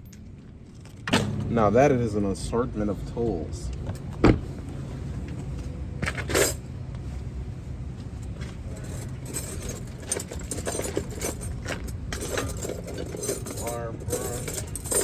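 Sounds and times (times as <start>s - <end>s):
low steady hum: 0.0s - 15.0s
metal hand tools clinking: 8.8s - 15.0s.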